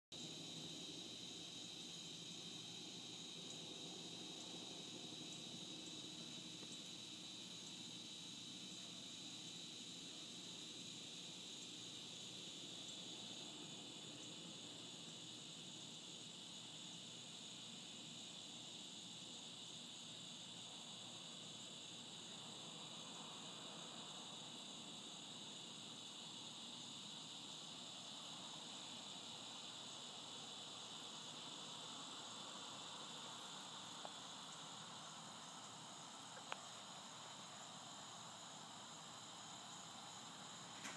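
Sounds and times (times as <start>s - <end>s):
faint high-pitched hiss: 0.1s - 40.9s.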